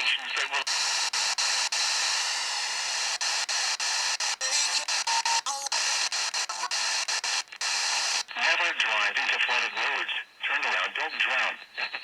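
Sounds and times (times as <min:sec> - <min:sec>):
faint radio voice: 0:00.0 - 0:00.9, 0:08.3 - 0:12.0
radio static hiss: 0:00.0 - 0:12.0.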